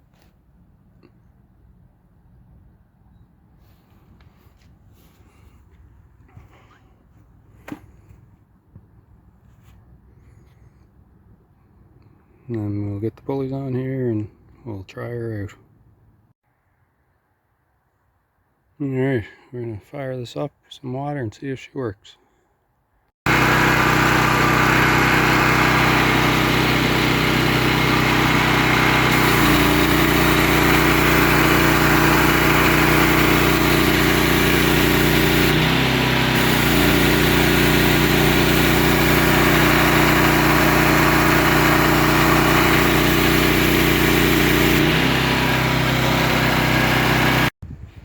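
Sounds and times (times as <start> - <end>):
small engine running: 23.3 - 47.6.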